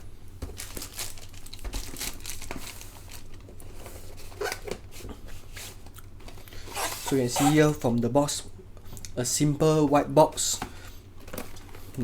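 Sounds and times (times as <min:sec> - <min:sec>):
packaging crinkling and rustling: 0:00.4 - 0:04.9.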